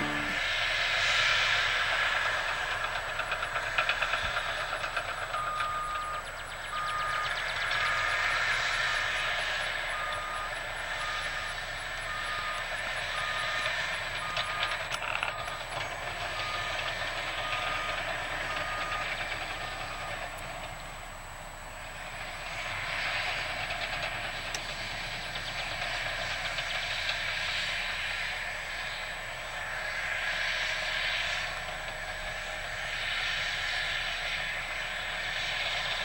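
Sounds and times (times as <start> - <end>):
reversing alarm beeping: 0.0 - 0.4, 5.3 - 9.0, 9.9 - 20.2
earthmoving machinery running: 0.0 - 0.5.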